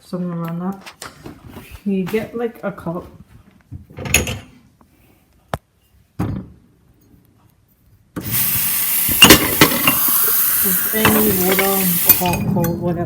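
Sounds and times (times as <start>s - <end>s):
tap water running into cup: 8.2s - 12.4s.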